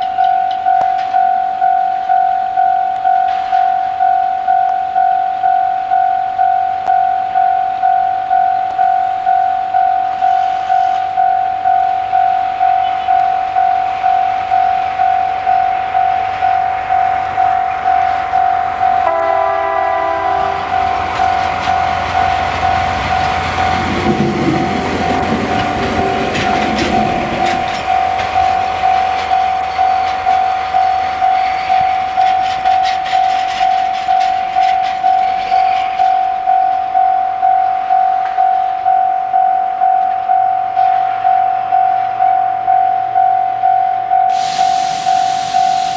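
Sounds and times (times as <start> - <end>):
level crossing alarm ding: 0.0 - 23.8, 36.3 - 45.9
clicking train wheels: 0.0 - 45.9
train engine rumble: 0.0 - 45.9
train electronic horn: 12.7 - 13.4, 17.8 - 23.8.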